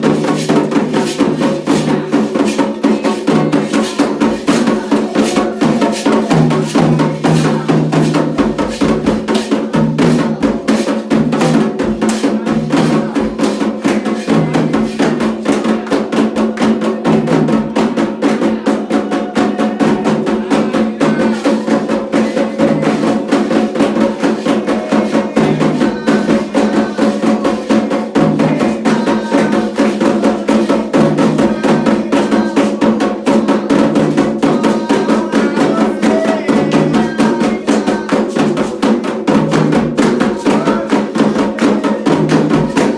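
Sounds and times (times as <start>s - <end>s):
fast ritual drumming: 0.0s - 42.9s.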